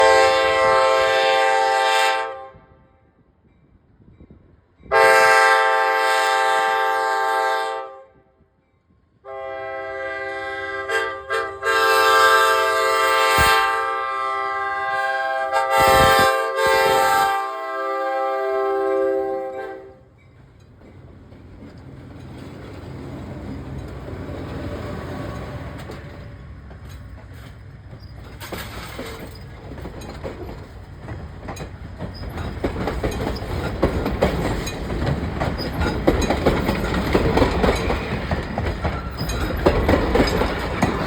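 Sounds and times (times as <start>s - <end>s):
locomotive air horn blasts: 0.0s - 3.1s, 4.9s - 8.4s, 9.2s - 20.1s.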